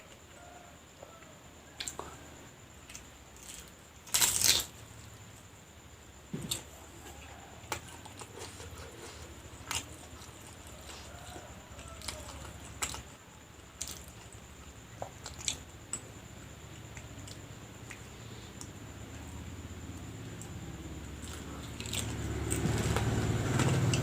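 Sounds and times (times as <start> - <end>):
quiet chewing: 0.0 - 4.6, 6.3 - 24.0
crunching bites: 2.8 - 4.8, 6.3 - 14.4, 15.0 - 16.0, 21.2 - 24.0.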